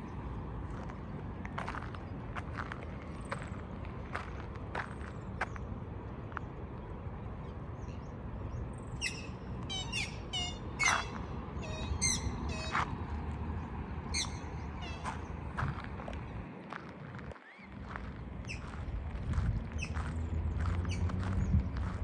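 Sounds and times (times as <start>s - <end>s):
low outdoor rumble: 0.0s - 22.0s
birds squawking: 9.0s - 12.9s, 14.1s - 15.3s.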